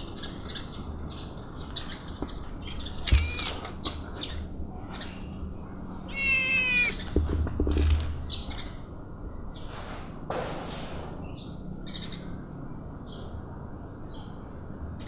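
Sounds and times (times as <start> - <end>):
kitten meowing: 3.1 - 3.6, 6.1 - 7.0.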